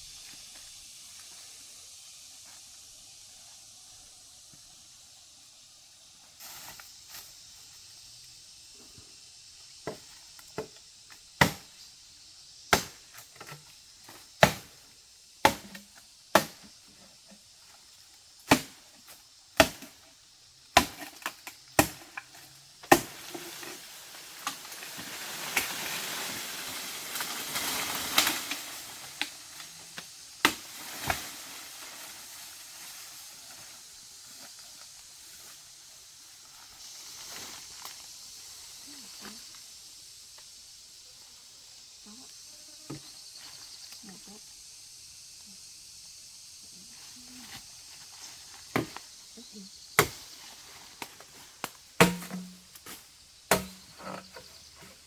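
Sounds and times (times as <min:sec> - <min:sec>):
sharp chopping strikes: 0:11.4 - 0:11.7, 0:12.7 - 0:13.0, 0:14.4 - 0:14.7, 0:15.4 - 0:15.8, 0:18.5 - 0:18.8, 0:19.6 - 0:19.9, 0:21.8 - 0:22.1, 0:22.9 - 0:23.1, 0:30.4 - 0:30.7, 0:50.0 - 0:50.2, 0:52.0 - 0:52.8, 0:53.5 - 0:53.9.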